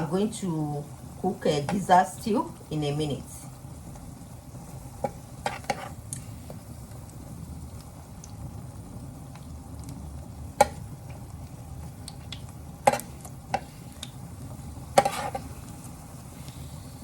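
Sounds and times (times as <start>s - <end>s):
food sizzling: 0.0s - 17.0s
utensil knocking and scraping a pot: 5.0s - 6.0s, 14.9s - 15.5s.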